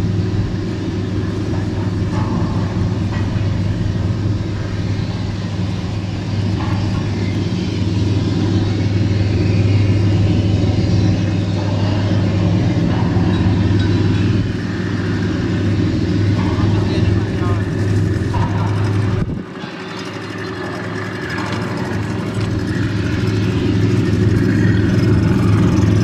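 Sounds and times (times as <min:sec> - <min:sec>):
constant hiss: 0:00.0 - 0:19.4
boat engines humming: 0:00.0 - 0:26.0.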